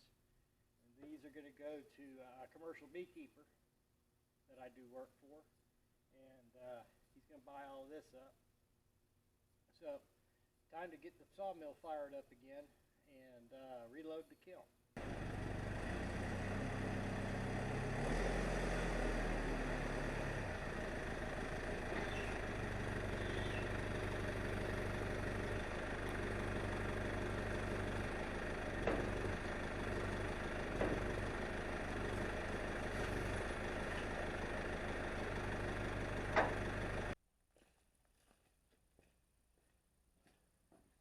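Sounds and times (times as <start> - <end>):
engine running: 15.0 - 37.2.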